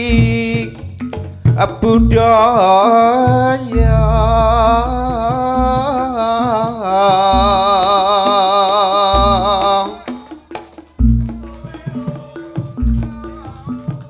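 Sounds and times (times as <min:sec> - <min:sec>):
gamelan accompaniment: 0:00.0 - 0:14.0
person singing wavering line: 0:01.7 - 0:10.5, 0:11.2 - 0:14.0
deep low boom: 0:03.8 - 0:06.2.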